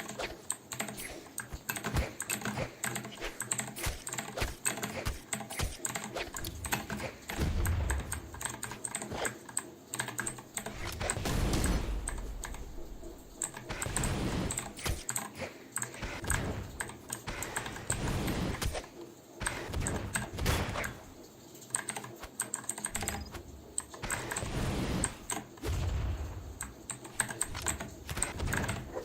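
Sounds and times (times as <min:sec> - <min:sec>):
mechanical keyboard typing: 0:21.6 - 0:25.5, 0:26.6 - 0:29.0.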